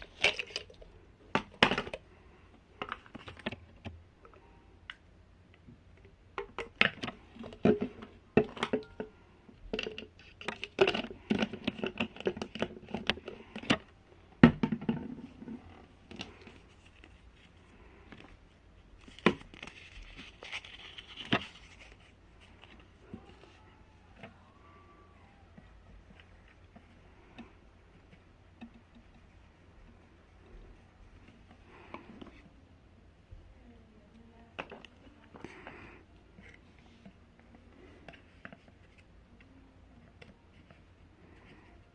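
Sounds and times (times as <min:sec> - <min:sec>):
rustling: 0:14.8 - 0:32.6.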